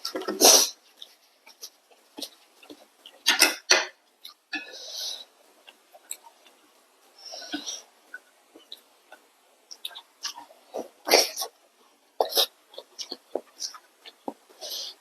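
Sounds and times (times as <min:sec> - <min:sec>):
chewing: 0:00.0 - 0:15.0.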